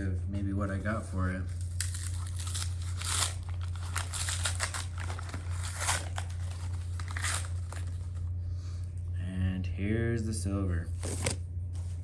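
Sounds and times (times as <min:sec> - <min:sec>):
packaging crinkling and rustling: 0:01.5 - 0:08.3, 0:10.9 - 0:11.4.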